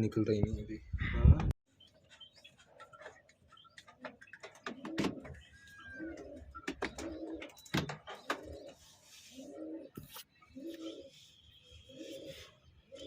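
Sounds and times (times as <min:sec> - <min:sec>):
pigeon cooing: 0:04.6 - 0:07.6, 0:08.2 - 0:13.0.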